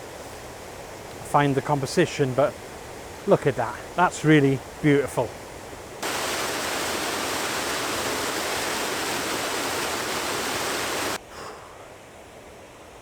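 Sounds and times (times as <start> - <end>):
waterfall rushing: 6.0 - 11.2.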